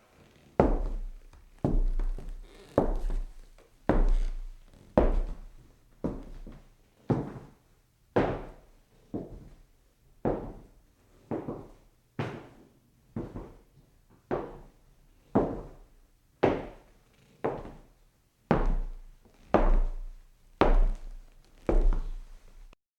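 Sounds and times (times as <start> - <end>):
footsteps on wooden floor: 0.2 - 7.6, 10.2 - 10.7, 11.3 - 12.6, 13.2 - 13.6, 14.2 - 14.7, 17.4 - 17.9, 18.5 - 22.7.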